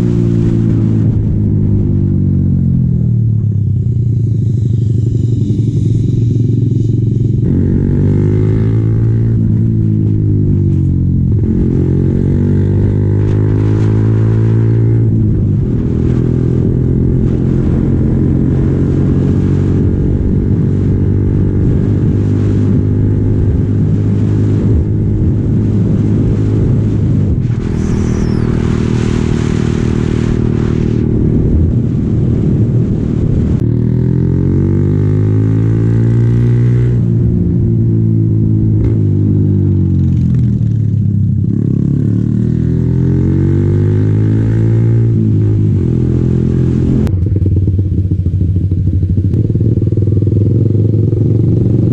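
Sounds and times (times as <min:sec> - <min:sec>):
motorcycle engine running: 0:00.0 - 0:51.9
rush of hissing noise: 0:03.8 - 0:07.5.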